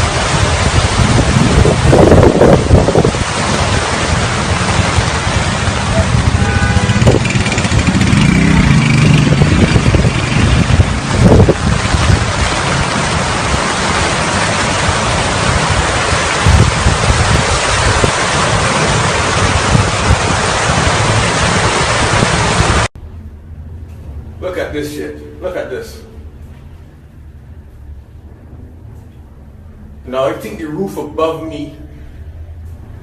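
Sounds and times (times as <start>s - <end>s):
strong wind buffeting microphone: 0.0s - 22.9s.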